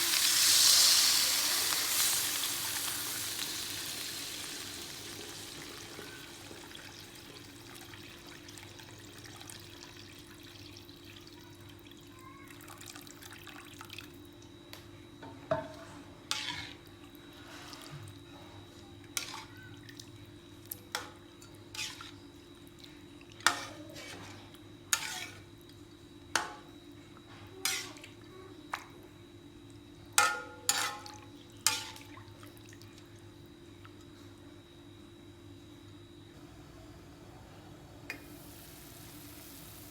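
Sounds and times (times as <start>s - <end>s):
water splashing in a pot: 0.0s - 12.0s, 30.2s - 33.1s, 38.1s - 39.9s.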